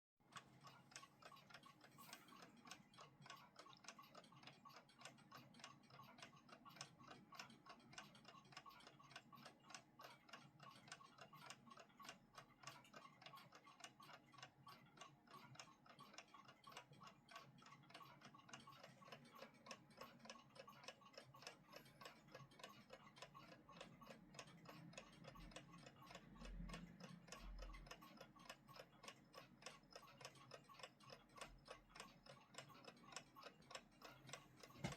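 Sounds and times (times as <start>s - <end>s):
mechanical clock ticking: 0.2s - 34.9s.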